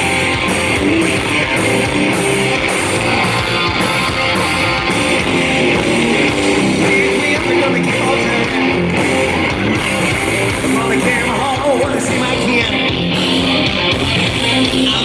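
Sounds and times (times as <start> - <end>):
live rock band playing: 0.0 - 15.0
strummed guitar: 0.0 - 15.0.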